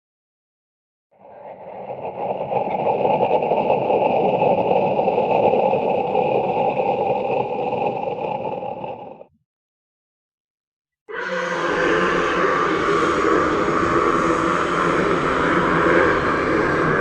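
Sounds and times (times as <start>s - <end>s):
rough monster growl: 1.2s - 9.4s, 11.1s - 17.0s.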